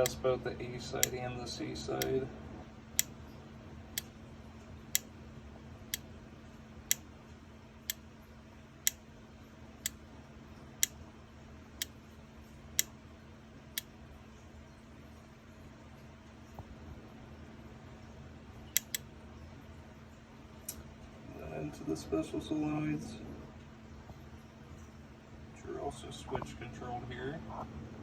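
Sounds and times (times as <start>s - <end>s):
solenoid clicks: 0.0s - 0.2s, 1.9s - 2.2s, 11.8s - 12.0s, 18.8s - 19.0s
steady low hum: 0.0s - 28.0s.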